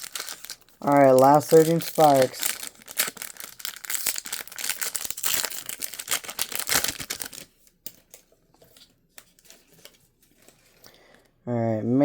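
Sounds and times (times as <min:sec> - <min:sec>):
foil wrapper crinkling and tearing: 0:00.0 - 0:07.8.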